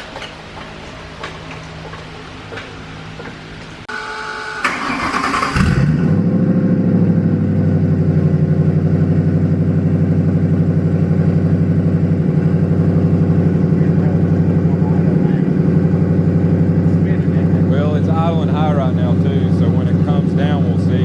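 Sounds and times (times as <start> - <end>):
starter motor cranking: 4.6 - 6.0
car engine fast idle: 4.6 - 6.2.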